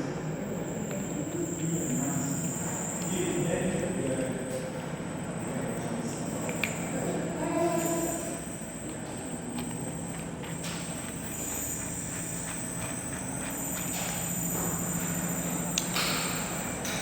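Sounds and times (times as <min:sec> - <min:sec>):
noisy background: 0:00.0 - 0:17.0
lathe running: 0:07.0 - 0:16.9.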